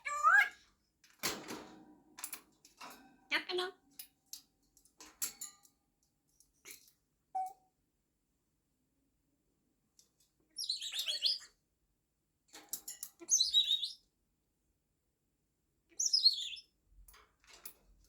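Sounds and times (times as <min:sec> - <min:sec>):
parrot chirping and warbling: 0:00.0 - 0:00.6, 0:10.6 - 0:11.5, 0:13.2 - 0:14.0, 0:15.9 - 0:16.7.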